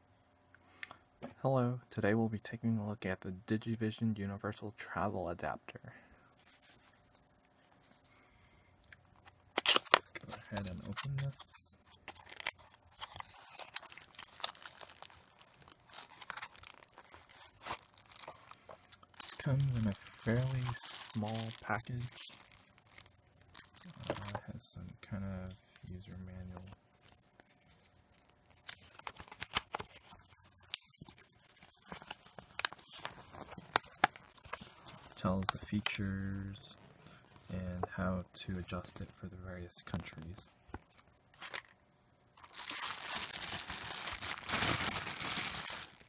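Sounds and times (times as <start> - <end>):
packaging crinkling and tearing: 9.1 - 24.5, 25.4 - 36.0, 42.4 - 46.0
packaging snapping: 9.5 - 11.4, 12.0 - 24.5, 42.4 - 46.0
paper rustling: 12.1 - 24.4, 25.8 - 35.8.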